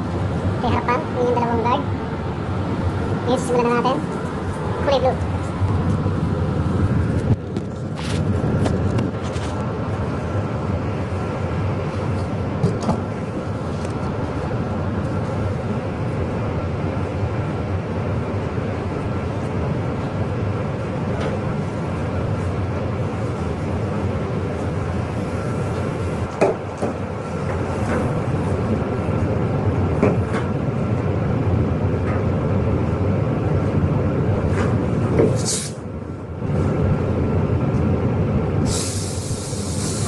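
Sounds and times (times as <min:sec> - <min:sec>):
machine rumble: 0:00.0 - 0:40.0
spray gun air hiss: 0:35.4 - 0:35.8, 0:38.6 - 0:40.0.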